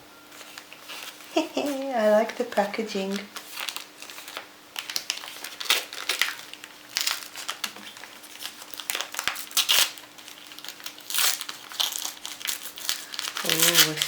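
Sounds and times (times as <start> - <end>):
packaging crinkling and rustling: 0.3 - 14.0.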